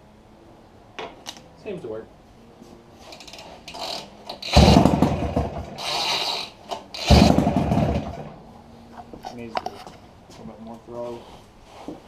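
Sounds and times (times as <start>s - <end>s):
recoil starter ratcheting whir: 3.1s - 8.4s.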